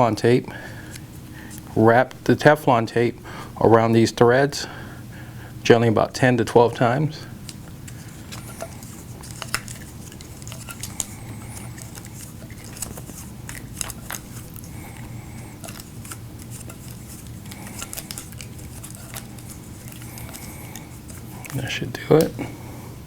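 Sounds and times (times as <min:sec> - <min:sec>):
steady low hum: 0:00.0 - 0:23.0
tape crinkling: 0:07.4 - 0:22.4.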